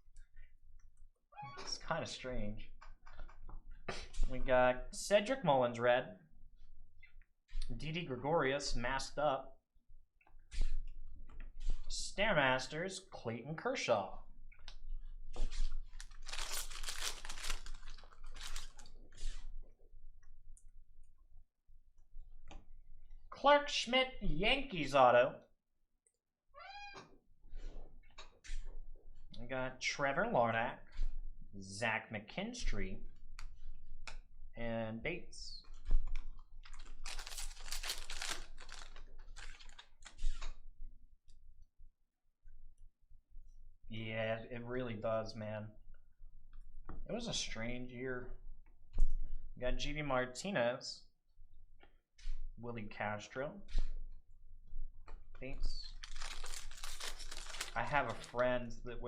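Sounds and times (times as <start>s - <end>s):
cards being handled: 15.4s - 19.4s, 36.1s - 40.5s, 55.8s - 58.5s
foil wrapper tearing and crinkling: 15.9s - 18.9s, 36.6s - 40.2s, 55.8s - 58.4s.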